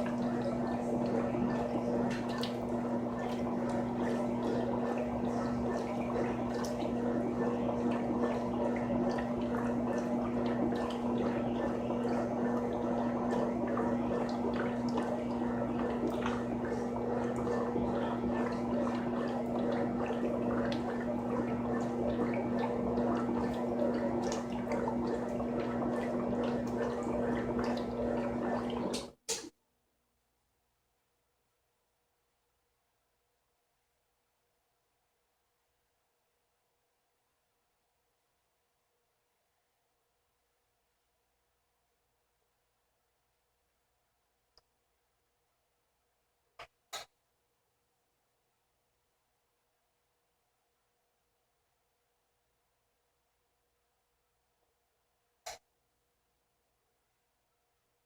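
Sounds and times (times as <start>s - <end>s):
washing machine motor hum: 0.0s - 29.5s
water splashing and gurgling: 0.0s - 29.5s.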